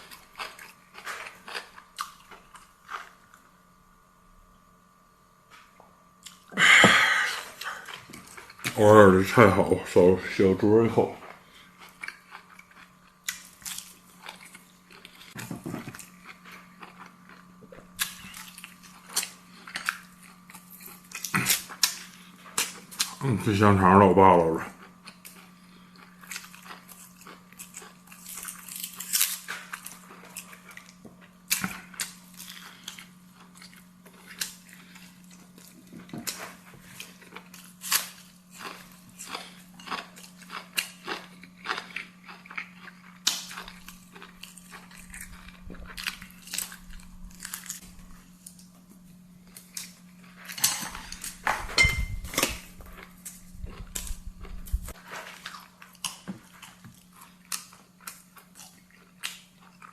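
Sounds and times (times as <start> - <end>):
person chewing food: 0.0 - 3.5, 5.5 - 8.8, 11.2 - 23.3, 24.7 - 59.9
steady low hum: 0.0 - 59.9.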